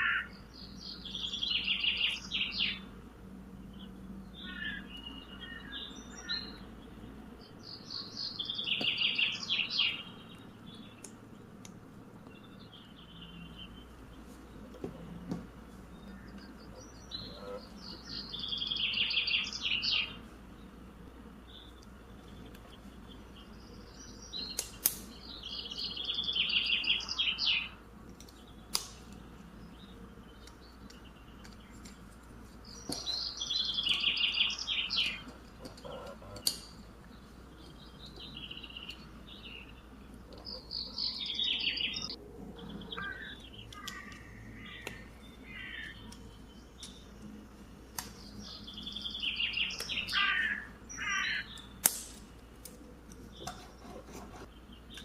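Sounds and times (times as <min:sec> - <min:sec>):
bird trilling: 0:00.0 - 0:02.8, 0:04.4 - 0:06.6, 0:42.9 - 0:46.1, 0:48.8 - 0:51.7
sharp clicks: 0:24.4 - 0:25.2, 0:28.1 - 0:29.3, 0:51.5 - 0:53.6.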